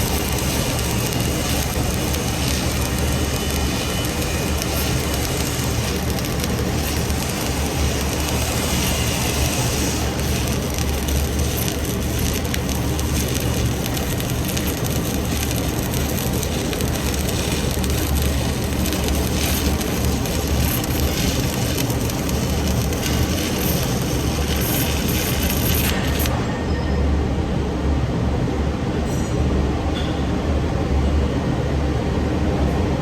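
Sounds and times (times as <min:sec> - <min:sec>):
welding arc crackling: 0:00.0 - 0:26.4.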